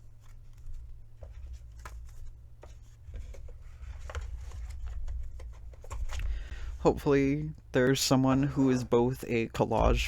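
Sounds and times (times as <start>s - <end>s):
tarot cards tapping and rustling: 0.0s - 6.8s
low room rumble: 0.0s - 10.0s.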